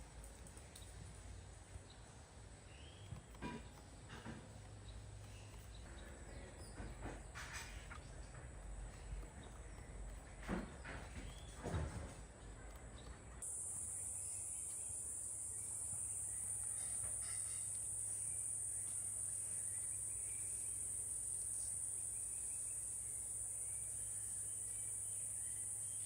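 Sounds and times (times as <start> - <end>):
insect chorus drone: 13.4 - 26.0.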